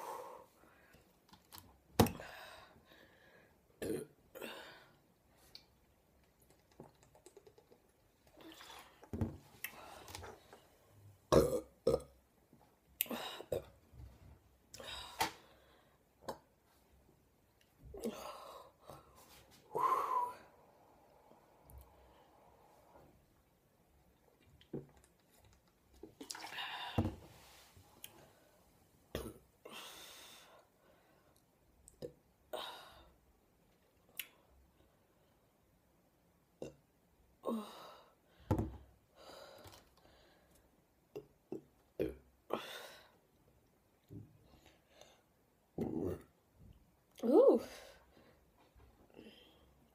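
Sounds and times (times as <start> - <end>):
person burping: 3.8 - 4.5, 11.3 - 12.2, 29.1 - 29.4, 36.6 - 36.8, 41.1 - 42.3
woman belching: 11.3 - 12.2.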